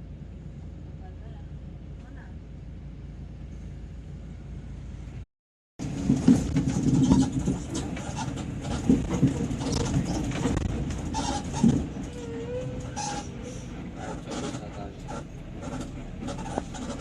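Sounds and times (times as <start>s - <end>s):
knocks and rattles: 5.8s - 13.2s
vehicle running: 5.8s - 17.0s.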